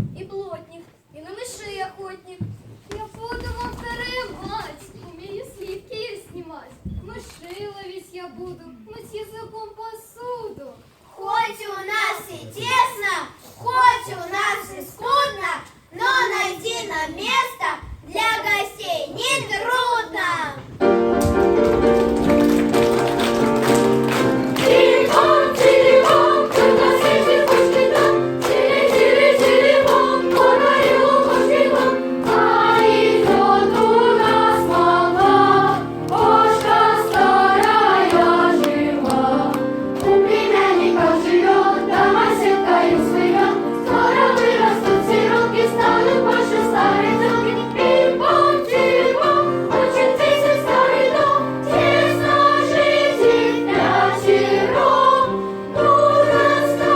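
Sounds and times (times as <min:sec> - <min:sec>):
instrumental accompaniment: 0:20.8 - 0:56.9
group of voices singing: 0:23.9 - 0:56.9.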